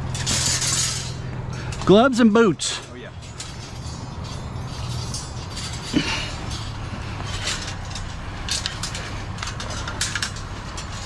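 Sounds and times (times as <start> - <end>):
metal fencing clinking: 0.0 - 11.0
steady low hum: 0.0 - 11.0.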